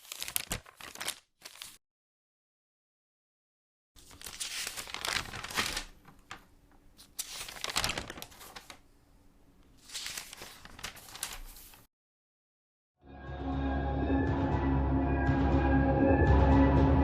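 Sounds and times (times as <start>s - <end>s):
paper pages flipping: 0.0s - 1.8s, 4.0s - 9.0s, 9.6s - 11.9s.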